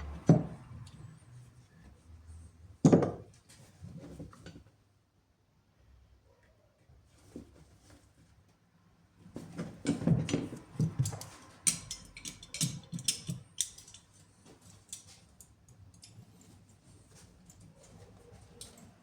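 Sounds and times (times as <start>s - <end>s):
tools clicking and clattering: 9.8s - 19.0s.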